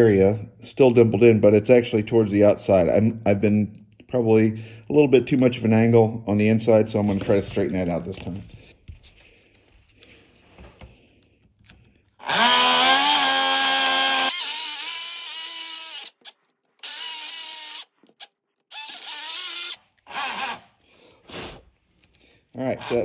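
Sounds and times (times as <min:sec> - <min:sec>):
small electric motor whining: 0:12.2 - 0:20.7.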